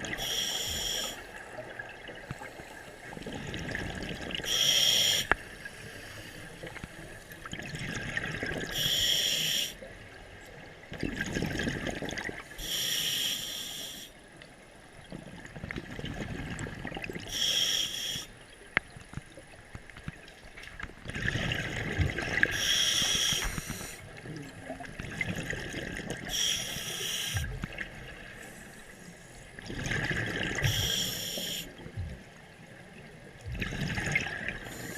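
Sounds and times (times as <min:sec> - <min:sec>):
regulator inhale hiss: 0:00.1 - 0:01.3, 0:02.3 - 0:03.1, 0:04.4 - 0:06.7, 0:08.7 - 0:09.8, 0:12.6 - 0:14.2, 0:17.3 - 0:18.4, 0:22.5 - 0:24.1, 0:26.3 - 0:27.5, 0:30.6 - 0:31.8, 0:34.7 - 0:34.9.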